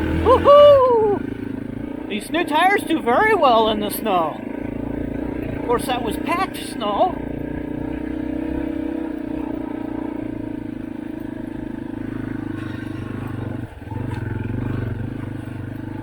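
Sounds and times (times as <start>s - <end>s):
dirt bike engine running: 0.0s - 16.0s.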